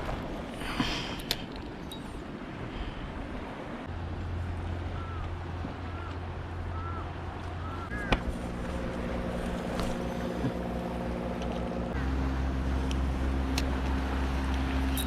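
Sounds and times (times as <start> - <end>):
motorboat engine running: 3.9 - 15.0.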